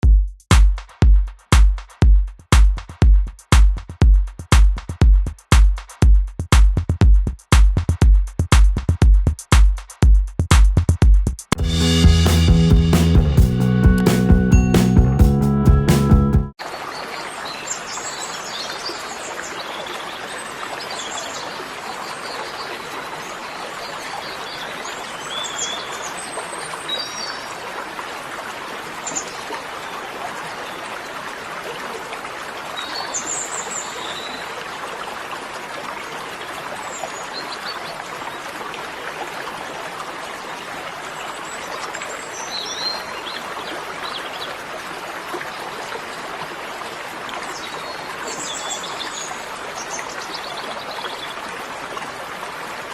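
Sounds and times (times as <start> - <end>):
stream flowing: 16.5 - 52.9.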